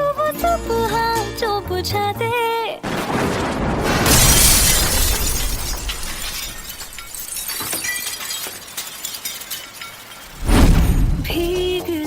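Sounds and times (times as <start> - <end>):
loud ringing crash: 2.9 - 11.6.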